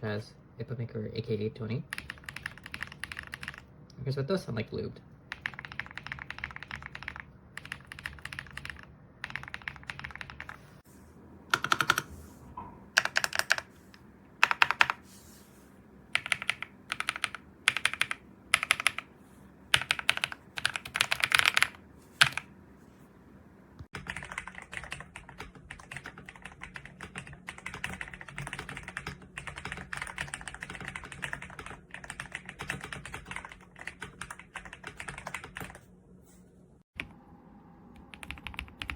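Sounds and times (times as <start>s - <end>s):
mechanical keyboard typing: 1.9s - 3.7s, 5.3s - 10.6s, 11.5s - 12.1s, 13.0s - 13.7s, 14.4s - 15.0s, 16.1s - 19.1s, 19.7s - 22.4s, 24.0s - 35.8s, 38.0s - 38.9s.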